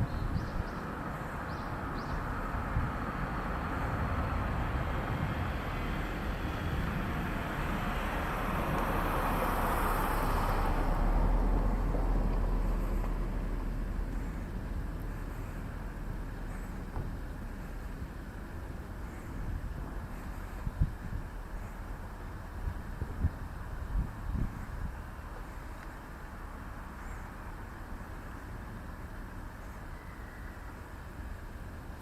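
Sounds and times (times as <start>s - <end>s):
passing vehicle rumble: 0.0s - 32.0s.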